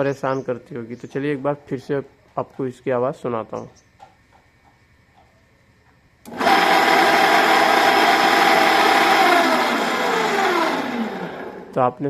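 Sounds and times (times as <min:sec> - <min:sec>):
water pump motor running harshly: 0:06.3 - 0:11.8.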